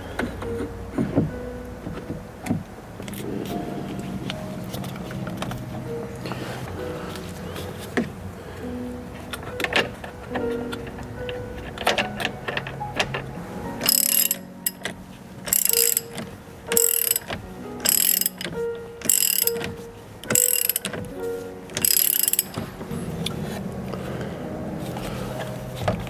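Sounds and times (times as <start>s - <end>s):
ratchet wrench clicking: 13.8s - 14.9s, 15.5s - 18.5s, 19.1s - 21.0s, 21.8s - 22.6s.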